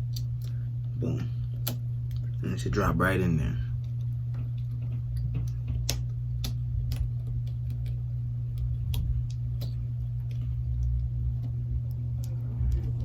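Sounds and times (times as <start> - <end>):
steady low hum: 0.0 - 13.0
small sharp clicks and taps: 3.8 - 13.0.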